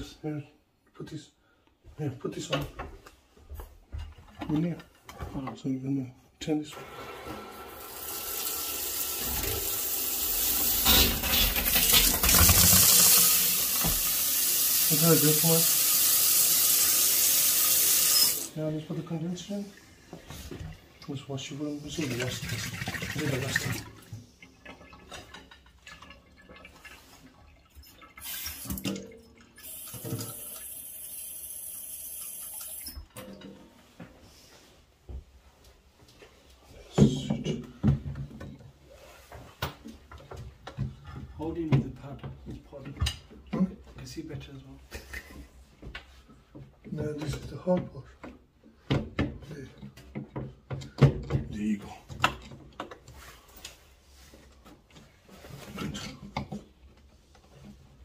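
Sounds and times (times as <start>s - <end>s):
water running from a tap: 7.4s - 18.5s, 22.0s - 24.0s, 26.4s - 33.0s.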